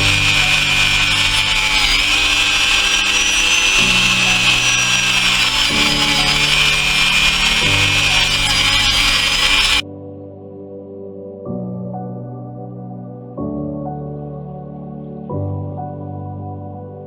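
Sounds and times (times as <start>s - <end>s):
power tool motor whine: 0.0s - 9.8s.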